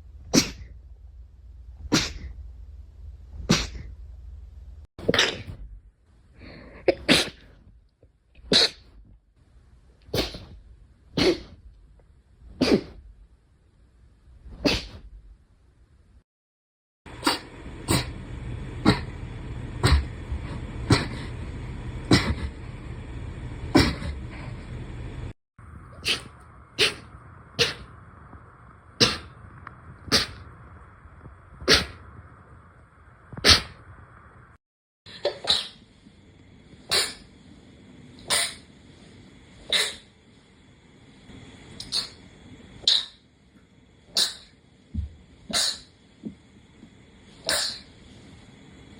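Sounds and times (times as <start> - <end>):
short sharp sneezes: 0.3 - 0.7, 1.9 - 2.3, 3.5 - 3.9, 6.9 - 7.5, 8.5 - 8.9, 10.1 - 10.6, 11.2 - 11.6, 12.5 - 13.0, 14.5 - 15.1, 26.0 - 27.9, 31.7 - 32.0, 33.4 - 33.8, 35.2 - 35.8, 36.9 - 37.2, 38.3 - 38.7, 39.7 - 40.1, 41.8 - 42.2, 42.8 - 43.2, 44.2 - 44.5, 45.5 - 45.9, 47.5 - 47.9.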